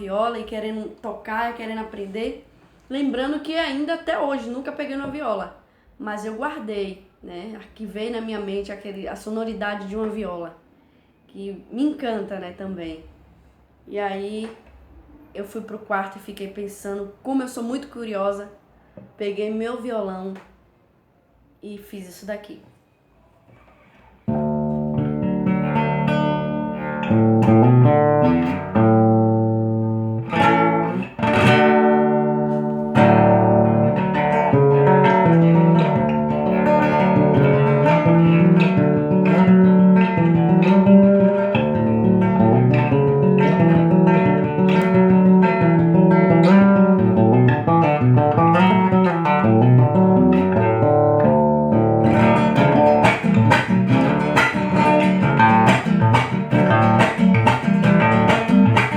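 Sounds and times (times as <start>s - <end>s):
acoustic guitar plucked melody: 24.2s - 58.9s
guitar strum: 24.3s - 58.9s.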